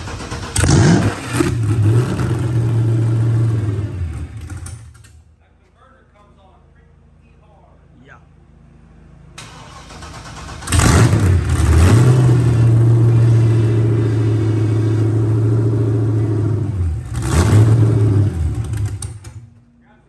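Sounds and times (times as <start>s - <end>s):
car engine revving hard: 0.0s - 4.8s, 9.4s - 19.2s.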